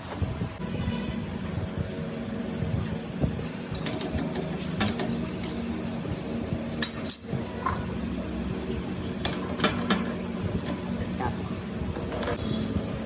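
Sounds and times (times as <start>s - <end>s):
steady mechanical hum: 0.0s - 13.0s
metal parts clinking: 3.4s - 5.7s, 6.8s - 7.4s.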